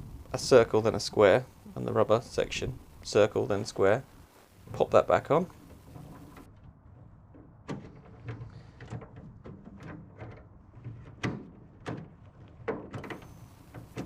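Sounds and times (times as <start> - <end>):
door lock clicks and clunks: 11.1 - 14.0.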